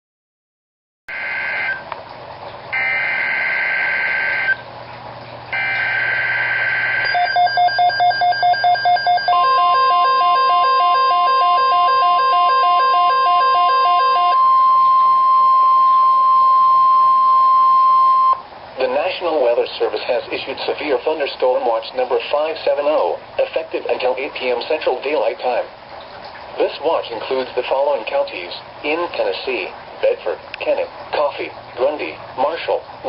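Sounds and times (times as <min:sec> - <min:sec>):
steady warning alarm tone: 0:01.1 - 0:01.9, 0:02.7 - 0:04.6, 0:05.5 - 0:18.4
rapid radio beeps: 0:06.9 - 0:15.2.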